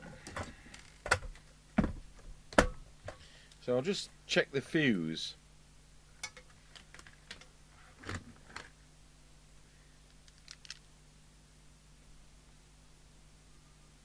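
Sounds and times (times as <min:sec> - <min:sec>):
small parts clicking and tapping: 0:06.2 - 0:07.5, 0:10.1 - 0:10.8.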